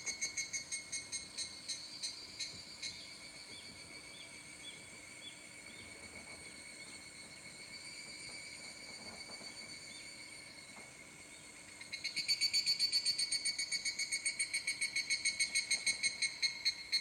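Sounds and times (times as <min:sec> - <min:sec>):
rhythmic pulsing insect call: 0:00.0 - 0:17.0
insect high-pitched trill: 0:11.9 - 0:17.0.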